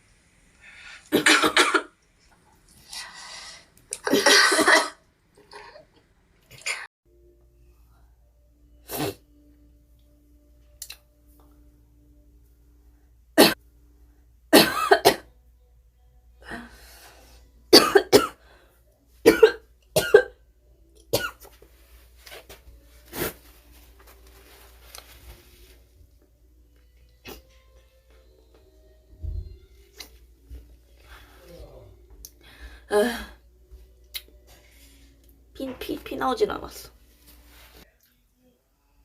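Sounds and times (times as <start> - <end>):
woman coughing: 1.1 - 1.9, 4.0 - 5.0, 14.6 - 15.3, 17.7 - 18.4, 19.2 - 20.4.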